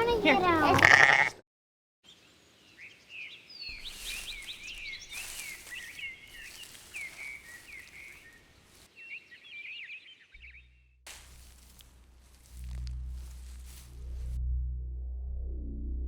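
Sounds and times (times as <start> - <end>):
many birds chirping: 2.1 - 10.4.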